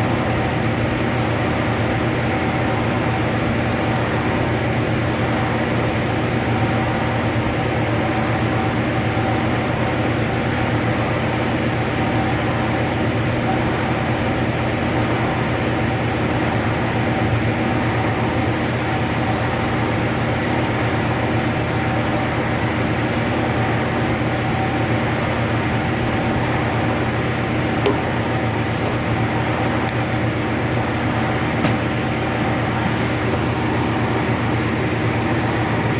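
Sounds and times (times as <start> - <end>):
spin-drying machine motor humming: 18.4 - 35.9.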